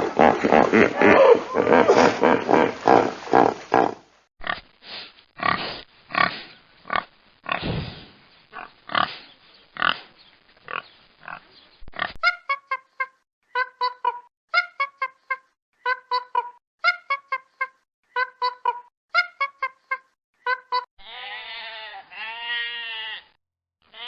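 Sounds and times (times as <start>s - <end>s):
pigs grunting and squealing: 0.0s - 4.6s.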